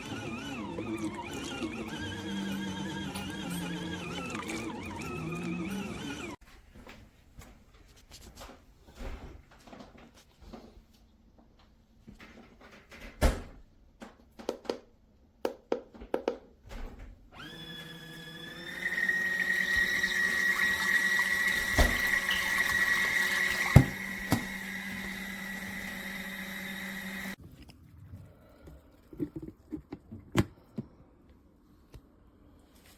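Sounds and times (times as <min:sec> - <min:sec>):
electric motor hum and whine: 0:00.0 - 0:06.4, 0:17.4 - 0:27.4
water churning in tub: 0:18.6 - 0:27.4.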